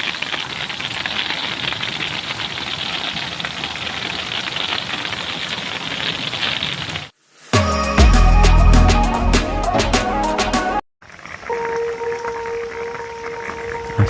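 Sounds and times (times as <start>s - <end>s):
heavy rain: 0.0s - 7.6s
music: 7.6s - 10.8s.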